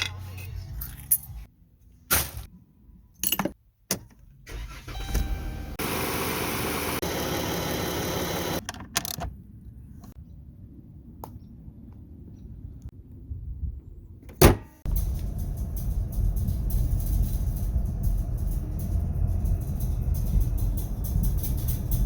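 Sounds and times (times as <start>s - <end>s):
car engine running: 4.7s - 8.6s, 14.9s - 22.0s
low steady rumble: 14.8s - 22.0s.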